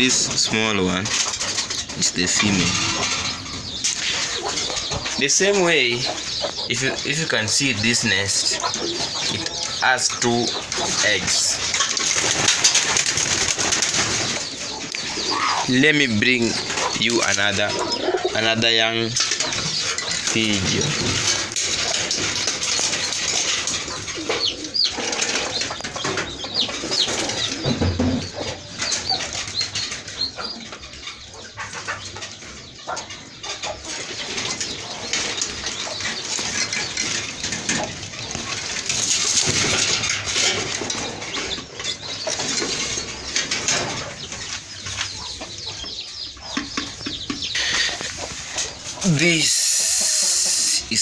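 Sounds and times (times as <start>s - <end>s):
rustling and clattering: 0.0s - 50.7s
pigeons flapping wings: 10.5s - 15.3s.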